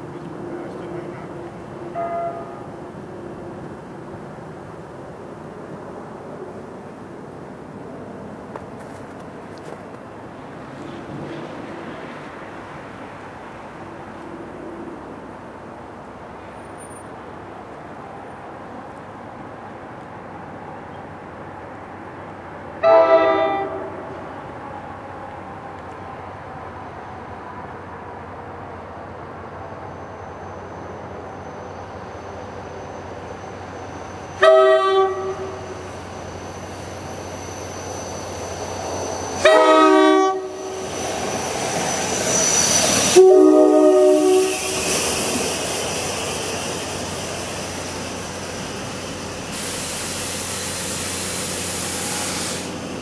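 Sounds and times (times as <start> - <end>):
train rumbling past: 0.0 - 53.0
train horn blasts: 22.8 - 24.1, 34.4 - 35.8, 39.4 - 40.8, 43.0 - 44.8.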